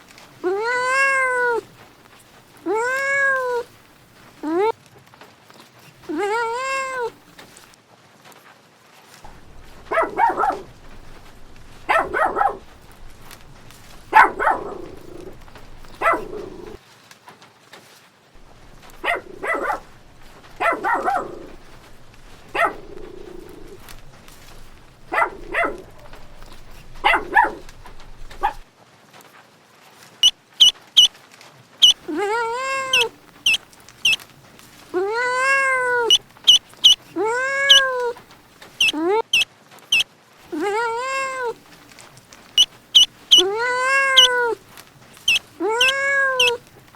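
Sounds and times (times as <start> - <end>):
dog barking: 9.3 - 16.8, 18.4 - 28.6, 31.8 - 34.2, 34.8 - 41.5, 42.5 - 44.6, 45.2 - 46.6
rapid high-pitched calls: 9.3 - 16.8, 31.8 - 40.0, 42.4 - 46.7.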